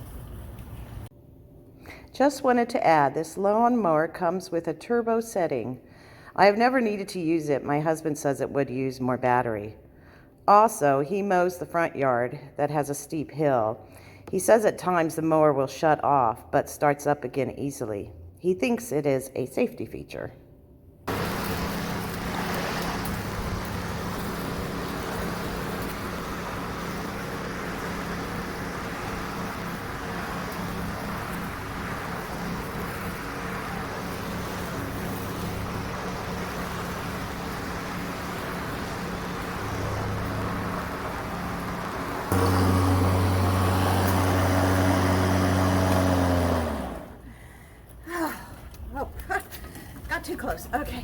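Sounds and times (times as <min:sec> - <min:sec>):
lawn mower cutting grass: 0:21.1 - 0:47.3.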